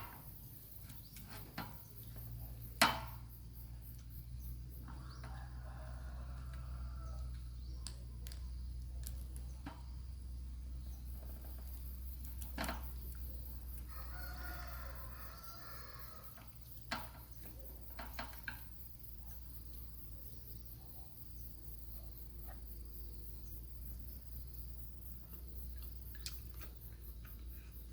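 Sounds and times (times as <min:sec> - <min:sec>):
rooster crowing: 0:04.9 - 0:07.4, 0:13.8 - 0:16.4.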